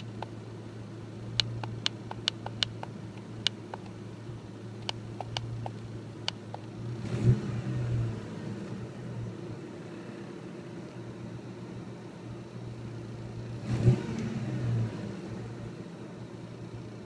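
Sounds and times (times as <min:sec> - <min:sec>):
sharp engine knock: 0:01.4 - 0:02.9.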